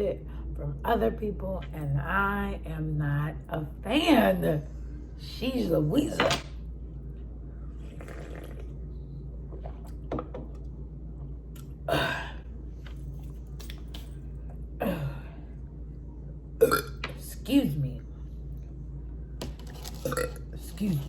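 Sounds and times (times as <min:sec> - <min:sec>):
low hum: 0:00.0 - 0:21.0
wet mouth noises: 0:07.9 - 0:08.8
short burp: 0:16.6 - 0:17.0.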